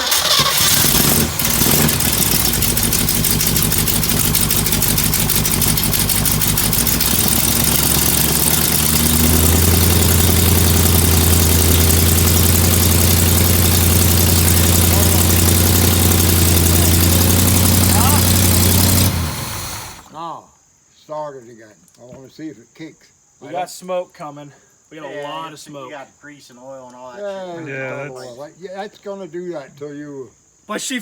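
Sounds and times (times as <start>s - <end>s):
engine running: 0.0s - 20.1s.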